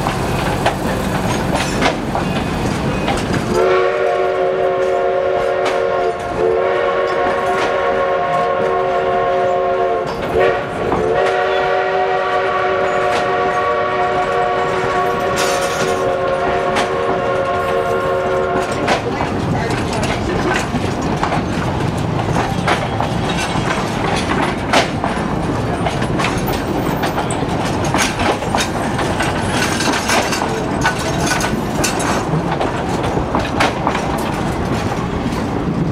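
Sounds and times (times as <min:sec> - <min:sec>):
train rumble: 0:00.0 - 0:35.9
wheels clicking over rail joints: 0:00.0 - 0:35.9
train whistle chord: 0:03.5 - 0:18.8.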